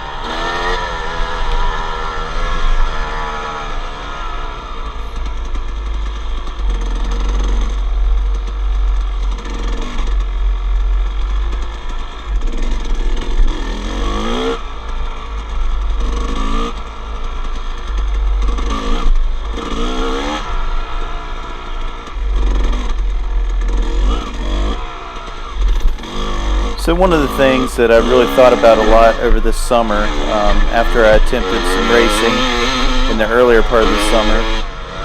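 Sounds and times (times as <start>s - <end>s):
dirt bike engine revving: 0.0s - 35.0s
steady low rumble: 26.7s - 34.8s.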